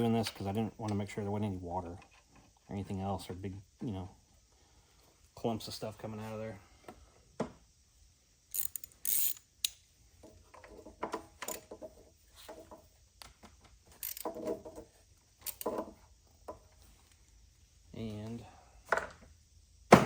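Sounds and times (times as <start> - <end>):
ratchet clicking and rasping: 8.5 - 9.8, 14.0 - 14.3.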